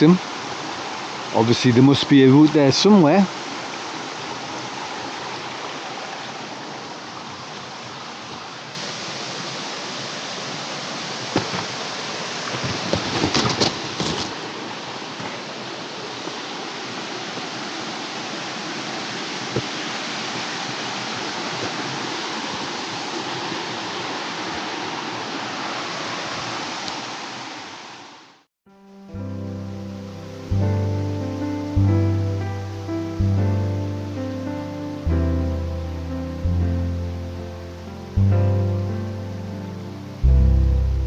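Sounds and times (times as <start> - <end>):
water rushing over rocks: 0.0 - 28.5.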